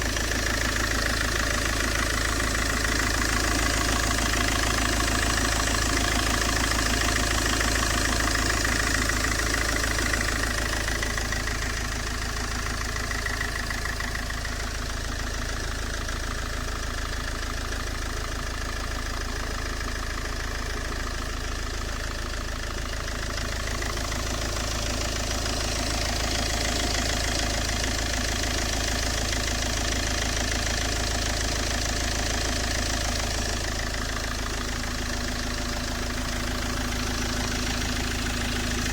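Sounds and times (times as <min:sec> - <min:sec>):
diesel engine idling: 0:00.0 - 0:38.9.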